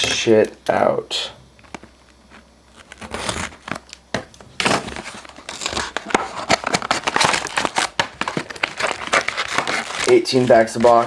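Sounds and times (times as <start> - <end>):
plastic wrapping crinkling and tearing: 1.6 - 11.0.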